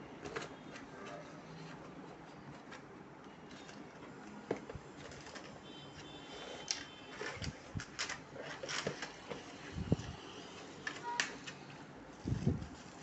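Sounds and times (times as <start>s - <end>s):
packaging and plastic parts handled: 0.2s - 13.0s.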